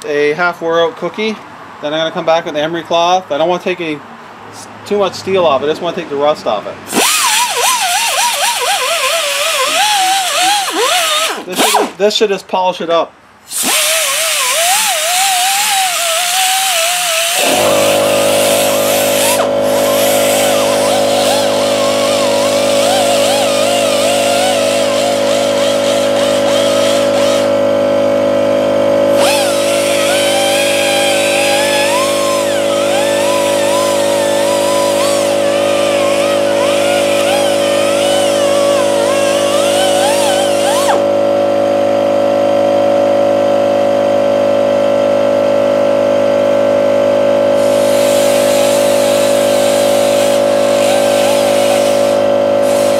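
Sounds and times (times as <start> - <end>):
angle grinder motor: 6.9 - 12.0, 13.5 - 42.5, 47.1 - 52.9
grinding on metal: 6.9 - 12.0, 13.5 - 27.5, 29.1 - 41.1, 47.6 - 52.9.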